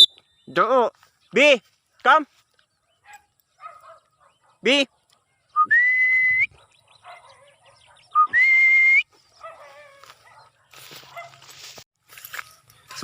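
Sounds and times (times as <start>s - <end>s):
two-note whistle: 0.0s - 0.2s.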